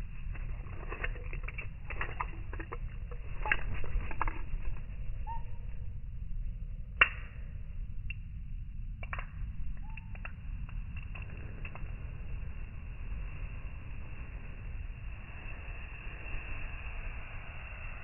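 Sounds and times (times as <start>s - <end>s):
steady low rumble: 0.0s - 18.0s
birds pecking with light clicks: 0.2s - 5.4s, 9.0s - 11.9s.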